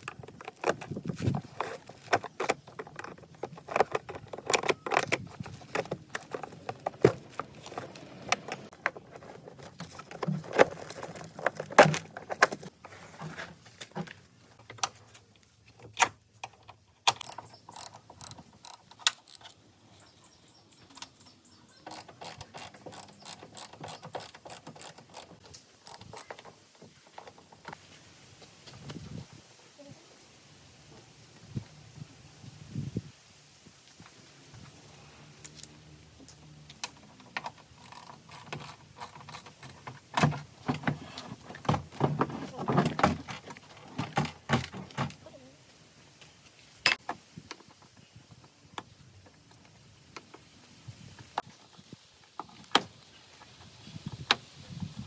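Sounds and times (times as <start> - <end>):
metal tools clicking and clinking: 17.1 - 19.6, 36.9 - 40.1.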